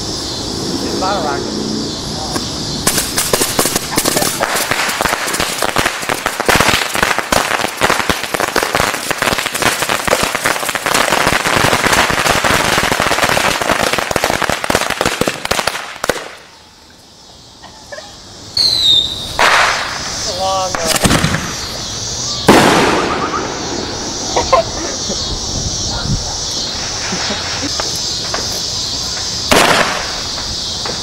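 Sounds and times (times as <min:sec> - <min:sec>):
firecracker bangs: 0:02.3 - 0:16.5, 0:18.6 - 0:21.8, 0:22.4 - 0:25.9, 0:26.5 - 0:31.0
high falling whistle: 0:18.5 - 0:20.7, 0:21.4 - 0:31.0.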